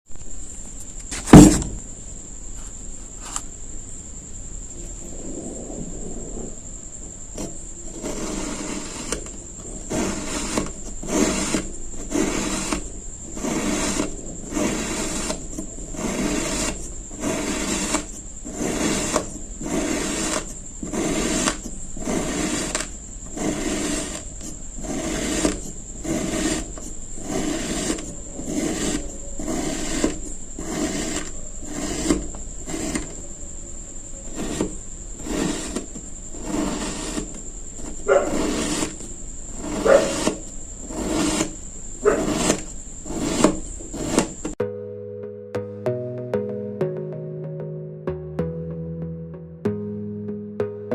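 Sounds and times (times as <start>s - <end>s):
knife cutting through sand: 7.9s - 33.2s, 34.3s - 44.6s.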